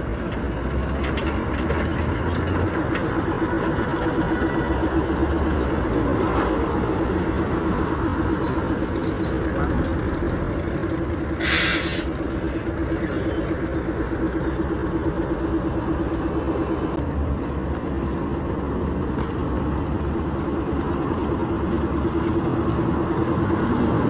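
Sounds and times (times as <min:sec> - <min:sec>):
motor vehicle drone: 0:00.0 - 0:24.0
held tone: 0:07.4 - 0:12.1
short loud hiss: 0:11.4 - 0:12.0.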